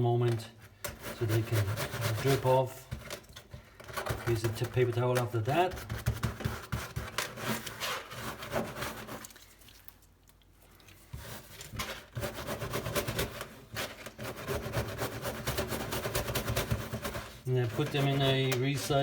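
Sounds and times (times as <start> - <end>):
paper towel rubbing metal parts: 1.0 - 2.8, 11.2 - 19.0.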